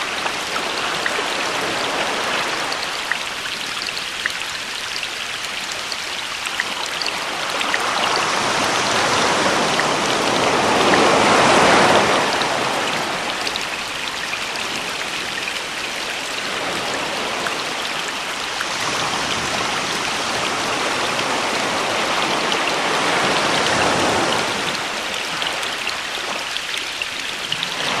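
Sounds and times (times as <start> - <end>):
sea waves: 0.0 - 28.0.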